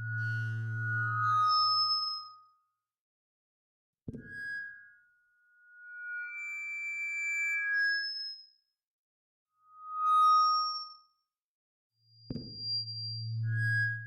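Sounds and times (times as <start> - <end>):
microphone feedback squeal: 12.5 - 14.0.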